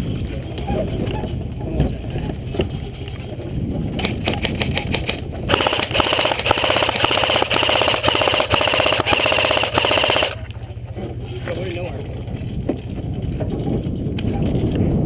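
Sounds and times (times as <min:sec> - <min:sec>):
truck engine running: 0:02.4 - 0:13.6
airsoft gun firing: 0:05.5 - 0:10.4.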